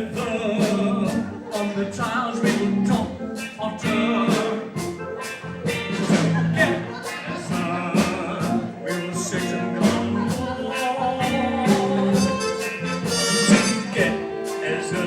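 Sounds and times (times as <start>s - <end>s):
drum and cymbal beat: 0.0s - 15.0s
musical band accompaniment: 0.0s - 15.0s.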